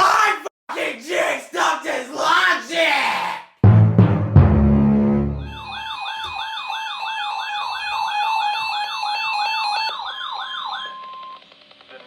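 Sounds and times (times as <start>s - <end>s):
steady tone: 3.6s - 6.0s
electronic siren alert sweeping: 5.0s - 11.4s.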